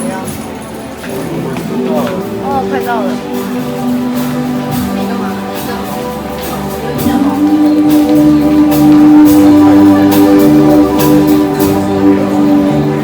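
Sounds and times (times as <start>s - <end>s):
instrumental music with steady beat: 0.0s - 13.0s.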